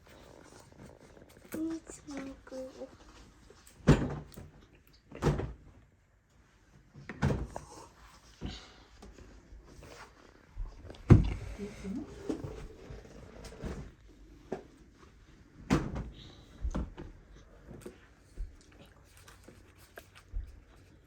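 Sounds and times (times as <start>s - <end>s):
objects knocking and thudding: 3.8s - 5.8s.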